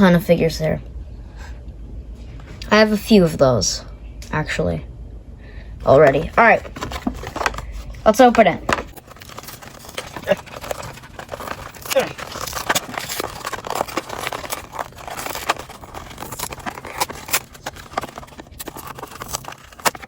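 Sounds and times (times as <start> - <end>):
plastic packaging tearing: 5.9 - 20.0.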